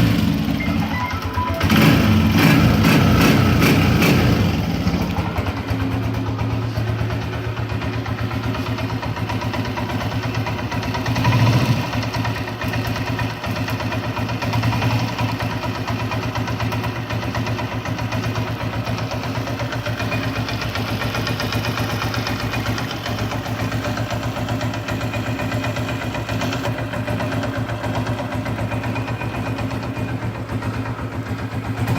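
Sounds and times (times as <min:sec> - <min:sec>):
motorcycle engine idling: 0:00.0 - 0:31.9
engine revving: 0:01.4 - 0:05.1, 0:11.1 - 0:12.0.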